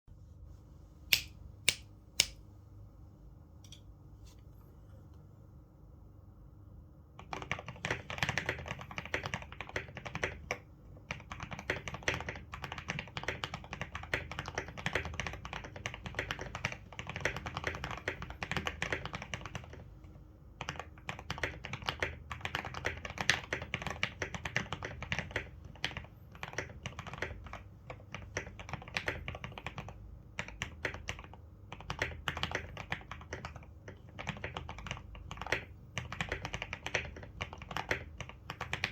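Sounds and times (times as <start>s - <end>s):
mechanical keyboard typing: 7.2s - 19.8s, 20.6s - 38.9s.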